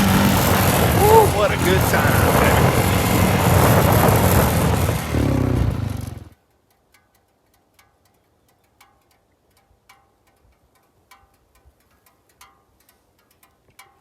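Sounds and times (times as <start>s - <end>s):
small engine running: 0.0s - 6.3s
wind on microphone: 0.0s - 6.3s
faint plucked ticks: 6.6s - 14.0s.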